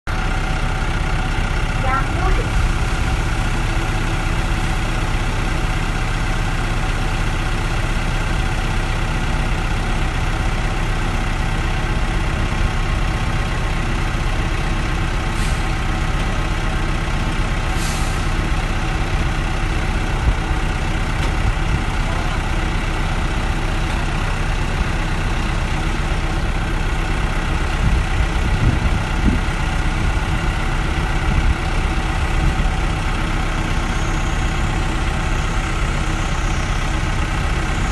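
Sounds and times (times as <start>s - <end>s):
road sweeper engine running: 0.1s - 37.9s.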